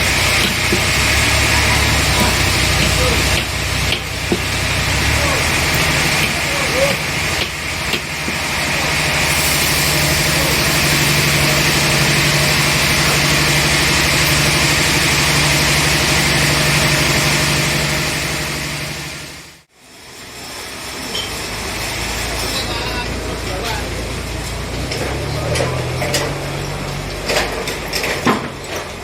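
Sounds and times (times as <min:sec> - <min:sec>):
loud high hiss: 0:00.0 - 0:23.4.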